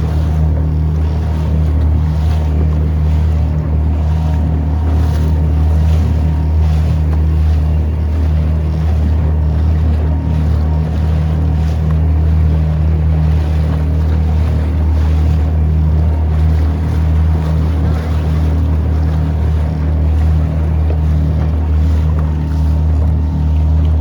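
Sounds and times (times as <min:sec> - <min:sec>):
motorboat engine drone: 0:00.0 - 0:24.0
rushing water: 0:00.0 - 0:24.0
wind on microphone: 0:00.0 - 0:24.0.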